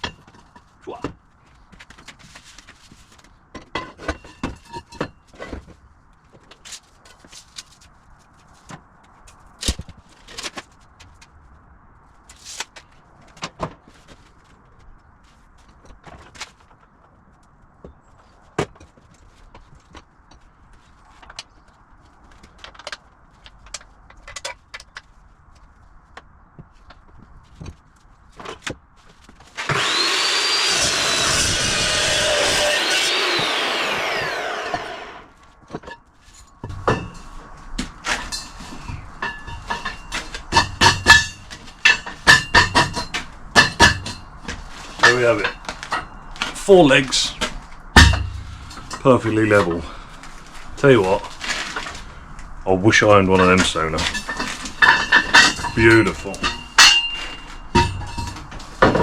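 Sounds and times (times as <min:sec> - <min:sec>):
power tool motor whine: 0:29.6 - 0:35.3
workshop knocks and clicks: 0:38.9 - 0:46.6, 0:54.0 - 0:59.0.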